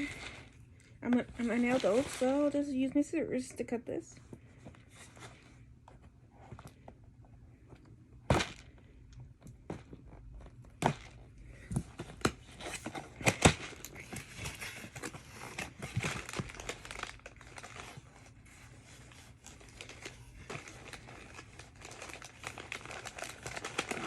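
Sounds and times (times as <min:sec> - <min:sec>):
packaging crinkling and tearing: 0:00.0 - 0:02.8, 0:12.0 - 0:24.0.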